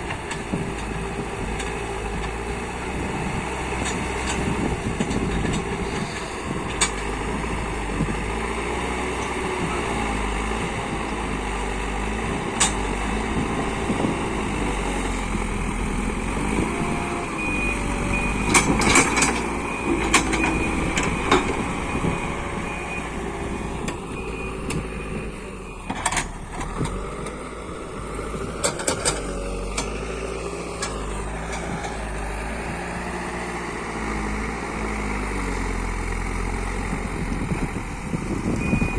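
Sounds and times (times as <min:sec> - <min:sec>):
diesel engine working: 0:00.0 - 0:38.9
metal clanks: 0:18.4 - 0:21.6.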